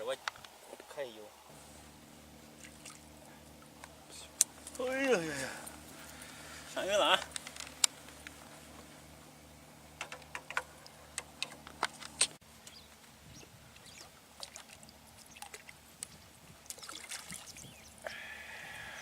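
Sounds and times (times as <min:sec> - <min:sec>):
fish thrashing water splashing: 0:16.7 - 0:17.6.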